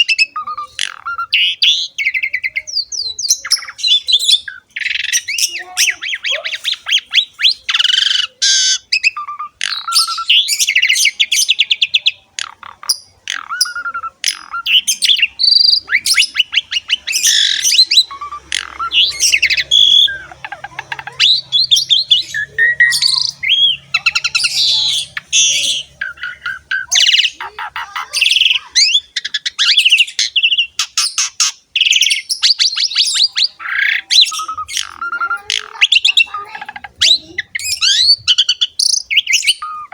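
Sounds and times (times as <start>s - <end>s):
starling singing: 0.0s - 39.9s.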